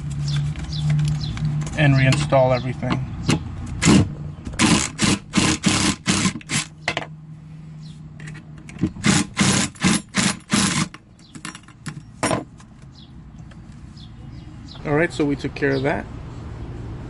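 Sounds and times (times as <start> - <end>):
impact driver rattling in bursts: 3.3 - 6.9, 8.6 - 12.5.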